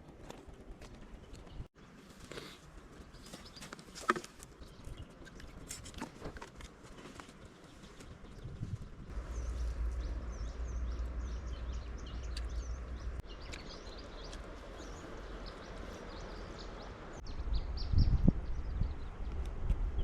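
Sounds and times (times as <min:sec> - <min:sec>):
small birds chirping: 0:01.0 - 0:05.8, 0:07.3 - 0:19.4
low rumble: 0:09.0 - 0:13.4.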